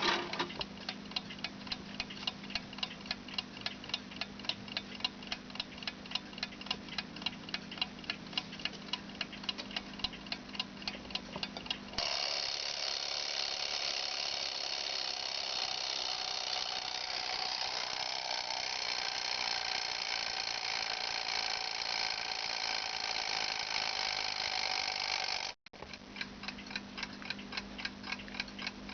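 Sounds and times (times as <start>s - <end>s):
alarm clock ticking: 0.5s - 28.9s
alarm clock bell ringing: 12.0s - 25.6s.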